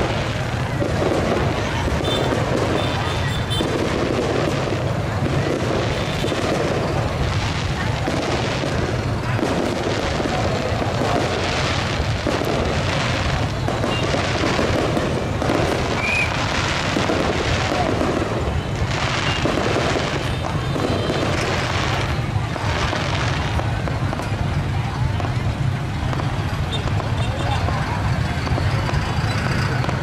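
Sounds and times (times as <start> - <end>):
fireworks exploding: 0.0 - 30.0
large crowd noise: 0.0 - 30.0.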